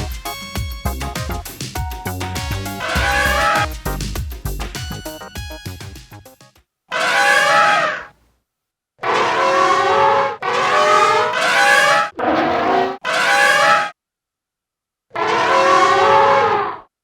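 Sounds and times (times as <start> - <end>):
elephant call blasts: 2.5 - 3.7.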